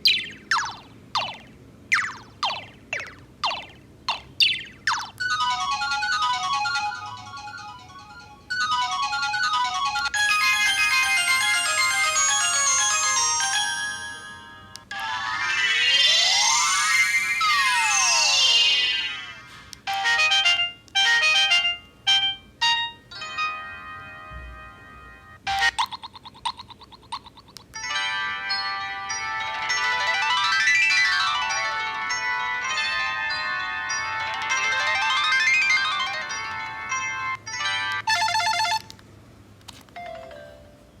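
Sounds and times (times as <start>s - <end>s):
polyphonic phone ringtone: 4.9s - 18.6s, 19.9s - 25.9s, 27.8s - 39.0s, 40.0s - 40.9s
phone repeated beeps: 38.1s - 38.9s.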